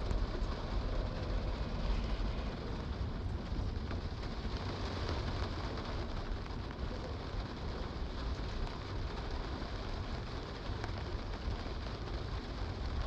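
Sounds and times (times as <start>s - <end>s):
low rumble: 0.0s - 8.0s
steady rain: 0.0s - 13.0s.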